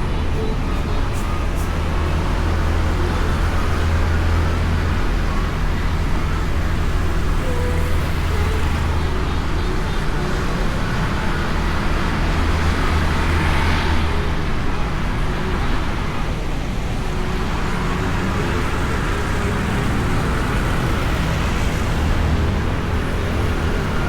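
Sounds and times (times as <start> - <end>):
wind and road rush: 0.0 - 24.0.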